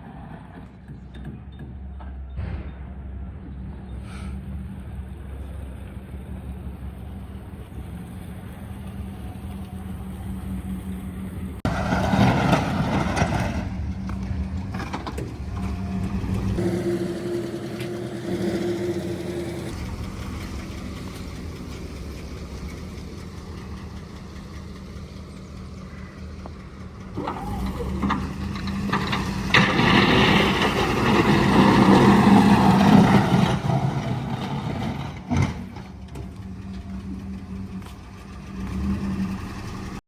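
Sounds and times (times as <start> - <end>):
truck engine running: 0.0 - 40.0.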